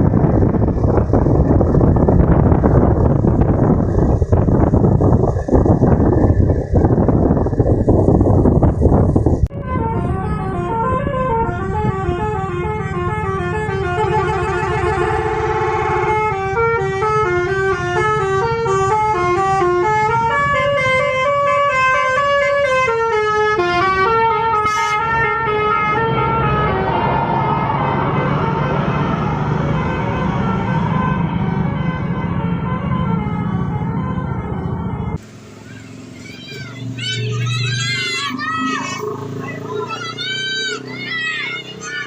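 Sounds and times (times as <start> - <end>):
musical air horn melody: 9.5 - 35.2.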